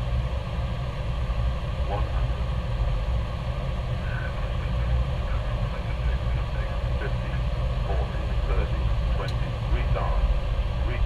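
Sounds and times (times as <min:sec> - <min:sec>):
aircraft engines droning: 0:00.0 - 0:11.0
faint voices: 0:04.0 - 0:10.2.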